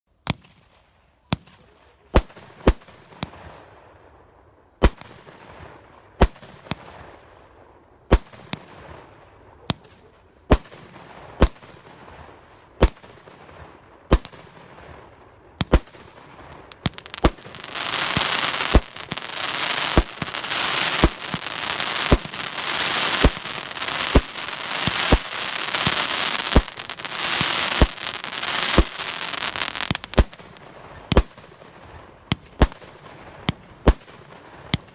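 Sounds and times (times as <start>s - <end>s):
firework bangs: 8.1s - 34.9s
firework crackle: 8.2s - 34.9s.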